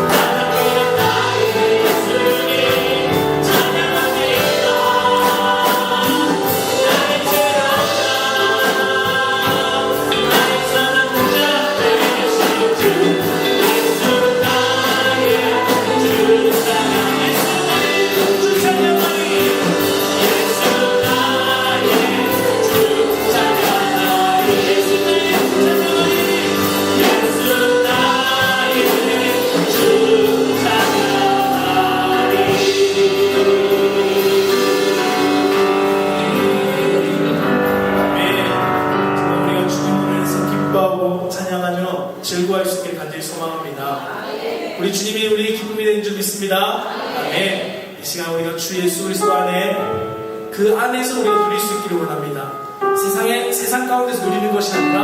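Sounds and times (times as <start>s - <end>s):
steady drum beat: 0.0s - 37.8s
group singing in unison: 0.0s - 38.5s, 43.8s - 45.3s, 46.5s - 48.0s
band accompaniment: 0.0s - 55.0s.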